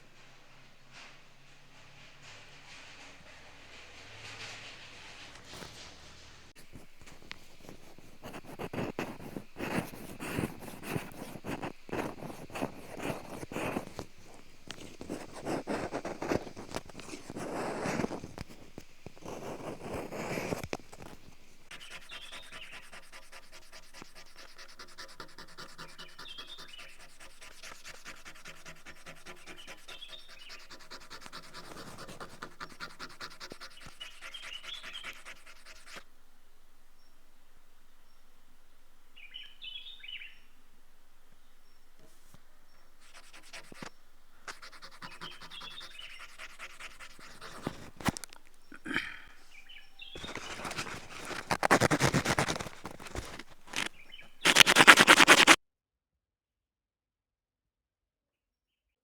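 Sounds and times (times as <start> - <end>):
close rubbing and scraping: 0.0 - 36.0, 43.0 - 55.6
soft steady scratching: 0.0 - 36.1, 41.6 - 55.6
faint bird chirps: 21.7 - 23.6, 25.7 - 27.2, 28.8 - 30.9, 33.2 - 36.0, 39.0 - 47.7, 48.4 - 51.5.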